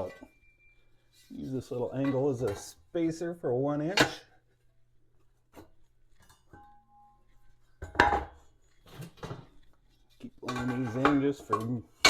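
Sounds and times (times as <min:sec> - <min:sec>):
metallic ring: 0:00.0 - 0:01.3.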